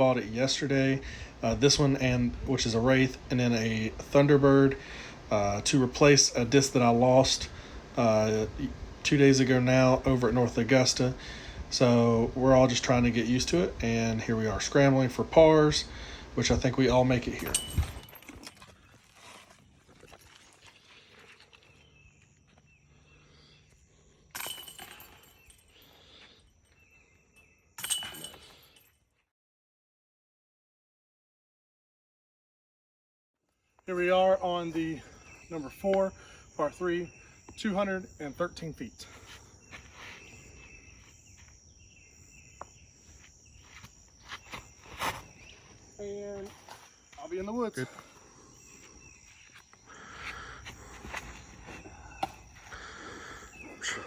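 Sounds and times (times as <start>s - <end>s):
faint outdoor background: 0.0s - 29.3s, 33.4s - 54.0s
crickets trilling: 9.2s - 28.9s, 33.8s - 54.0s
disc hitting basket chains: 16.9s - 20.3s, 24.3s - 26.0s, 27.7s - 28.9s
faint short insect calls: 33.6s - 54.0s.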